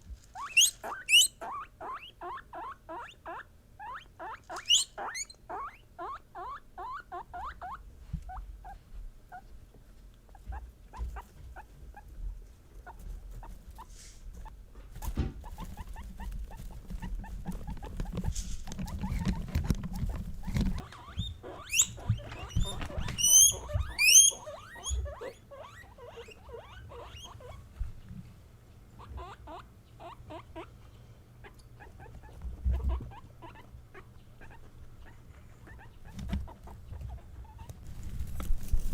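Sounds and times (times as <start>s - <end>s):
guinea pig high squeals: 0.3s - 9.4s, 15.4s - 27.6s, 29.0s - 30.7s, 31.4s - 37.7s
guinea pigs chirping: 0.4s - 9.4s, 12.8s - 27.7s, 29.0s - 30.8s, 31.4s - 38.9s.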